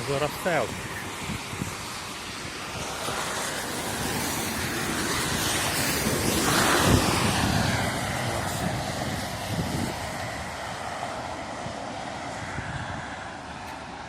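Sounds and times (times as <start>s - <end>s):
tyres hissing on wet road: 0.0s - 14.0s.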